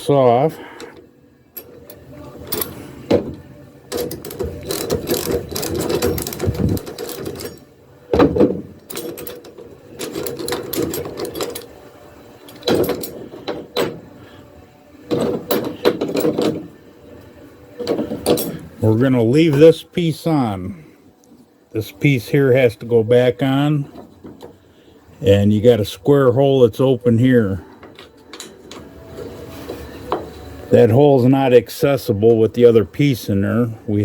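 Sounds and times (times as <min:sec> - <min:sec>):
metal latch clicking and rattling: 0:01.6 - 0:11.8, 0:12.5 - 0:14.1, 0:15.1 - 0:16.7, 0:17.8 - 0:18.7.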